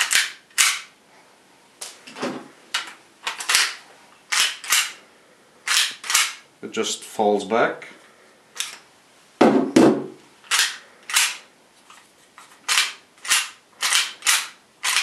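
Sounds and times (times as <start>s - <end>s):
pistol slide clacking: 0.0s - 0.9s, 2.8s - 5.0s, 5.7s - 6.4s, 10.5s - 11.4s, 12.6s - 15.0s.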